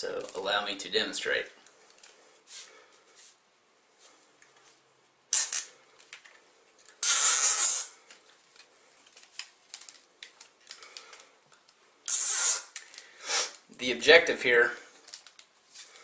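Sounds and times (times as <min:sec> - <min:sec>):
zip ties rasping tight: 0:07.0 - 0:08.0, 0:12.1 - 0:13.6.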